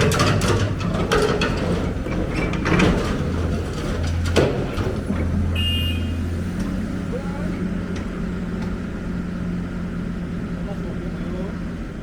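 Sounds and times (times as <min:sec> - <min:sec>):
metallic clanks and knocks: 0:00.0 - 0:05.5
diesel engine running: 0:00.0 - 0:12.0.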